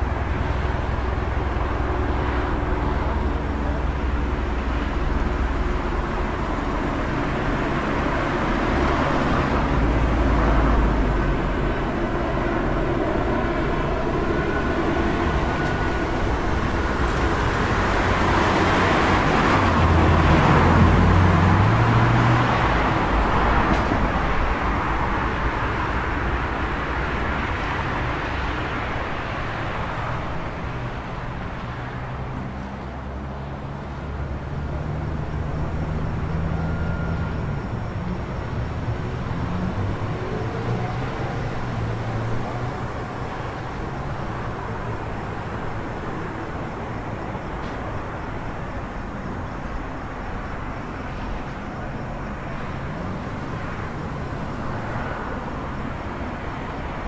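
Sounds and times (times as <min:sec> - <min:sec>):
vehicle passing: 0:00.0 - 0:25.0
traffic noise: 0:00.0 - 0:57.0.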